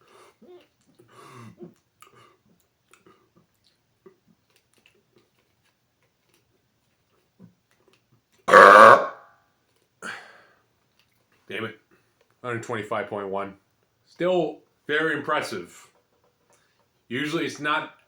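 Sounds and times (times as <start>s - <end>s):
faint mouth and throat sounds: 0.0s - 9.2s
man burping loudly: 8.5s - 9.2s.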